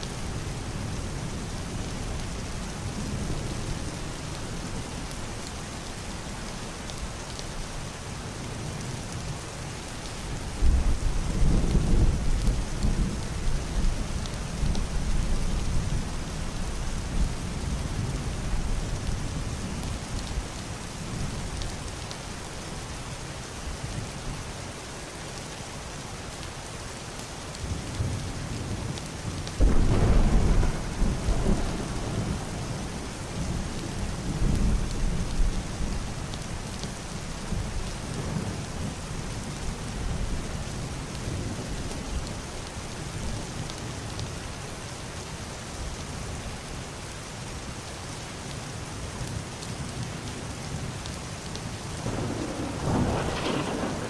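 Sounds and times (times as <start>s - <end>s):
heavy rain on roof and window: 0.0s - 54.0s
muffled thunder: 10.4s - 16.3s, 27.7s - 36.4s, 52.0s - 54.0s.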